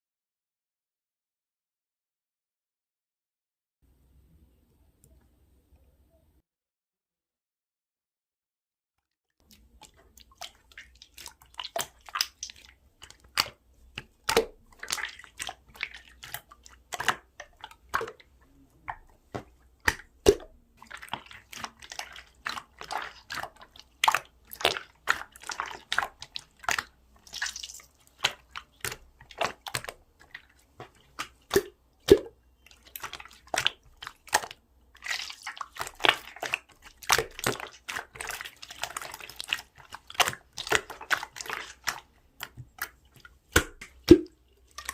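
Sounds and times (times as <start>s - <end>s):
slime clicking and squishing: 9.4s - 44.9s.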